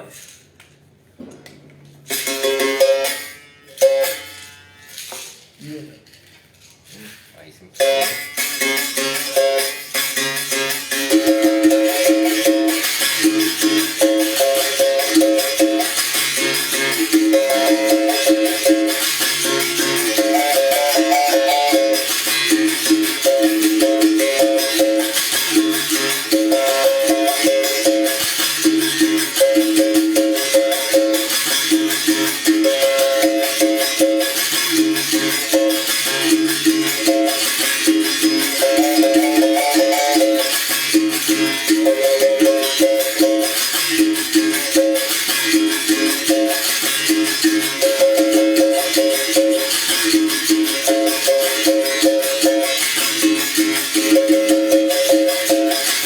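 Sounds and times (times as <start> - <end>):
shaker rattle: 11.3 - 56.0.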